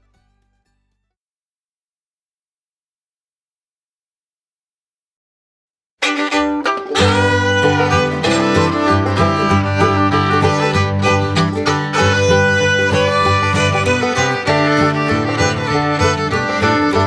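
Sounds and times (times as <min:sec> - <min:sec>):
upbeat fiddle and guitar tune: 0:06.0 - 0:17.0.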